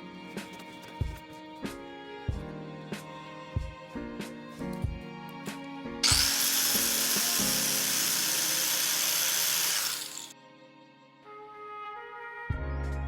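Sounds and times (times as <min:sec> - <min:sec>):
background music: 0:00.0 - 0:13.0
angle grinder grinding metal: 0:06.0 - 0:10.3.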